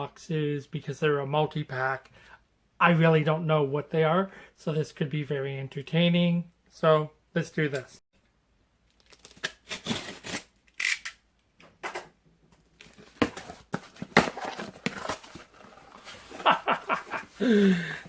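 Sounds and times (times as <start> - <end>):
tape and cardboard tearing: 8.9 - 11.2
knife cutting cardboard box: 13.0 - 17.3.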